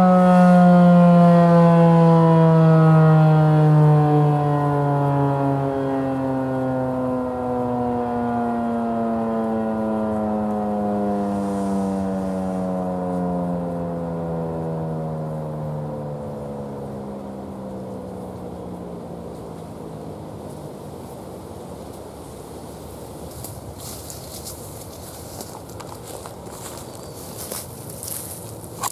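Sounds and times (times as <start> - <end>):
warning siren winding down: 0.0 - 22.4.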